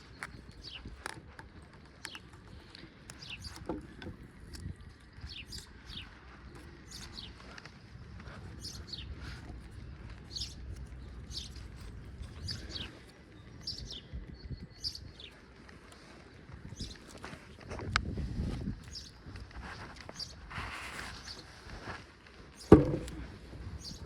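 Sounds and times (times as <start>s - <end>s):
birds chirping: 0.0s - 17.6s, 18.7s - 20.4s, 22.6s - 24.0s.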